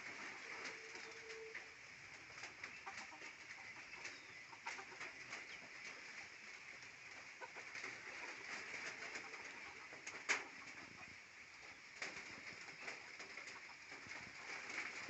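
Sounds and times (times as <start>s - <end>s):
chickens clucking faintly: 0.0s - 15.0s
small scattered ticks: 0.0s - 15.0s.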